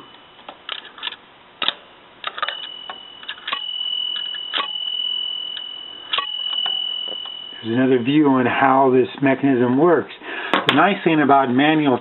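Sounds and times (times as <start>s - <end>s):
typewriter bell ringing: 2.2s - 8.8s.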